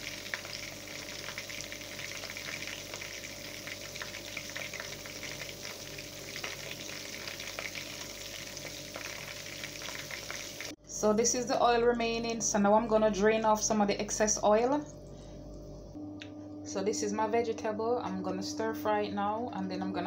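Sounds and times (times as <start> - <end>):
chicken frying in hot oil: 0.0 - 10.8.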